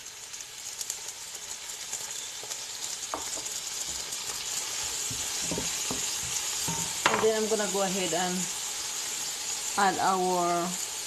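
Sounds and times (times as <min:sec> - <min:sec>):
garlic and onion sizzling in oil: 0:00.0 - 0:11.0
utensil knocking against pan: 0:03.1 - 0:03.5, 0:05.1 - 0:07.3.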